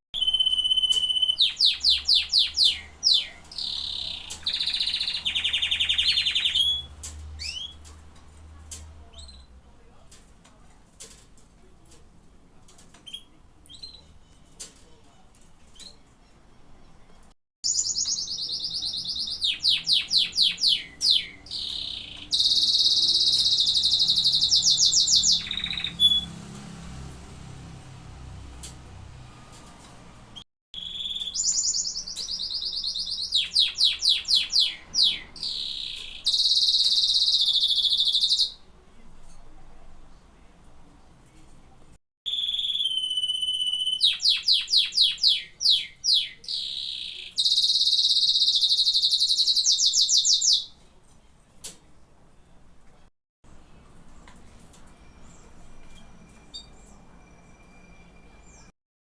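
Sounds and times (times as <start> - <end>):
canary singing: 0.2 - 8.0, 17.6 - 26.5, 30.8 - 38.7, 42.3 - 50.8.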